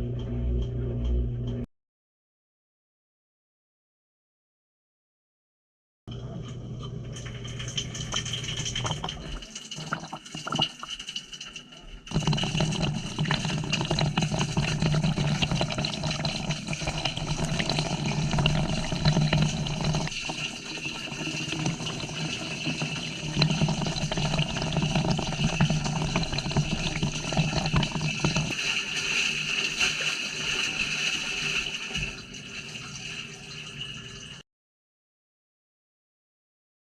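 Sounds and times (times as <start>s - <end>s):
washing machine motor hum: 0.0s - 1.7s, 6.1s - 34.4s
water sloshing and splashing: 7.1s - 34.4s.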